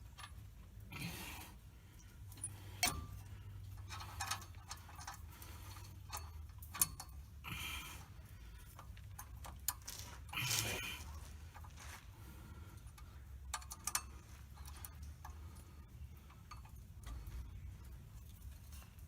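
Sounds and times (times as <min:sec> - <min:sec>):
low steady hum: 0:00.0 - 0:19.0
scraping rustles: 0:09.6 - 0:12.6.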